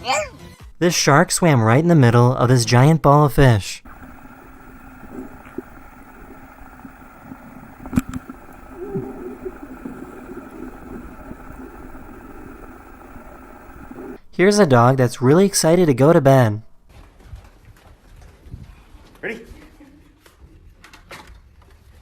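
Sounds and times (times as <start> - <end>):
faint held tones: 3.8 - 14.2
motor hum: 3.8 - 14.2.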